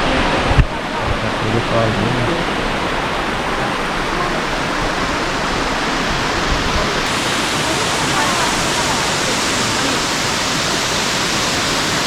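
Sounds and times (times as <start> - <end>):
waterfall rushing: 0.0 - 12.0
water splashing onto stones: 3.0 - 12.0.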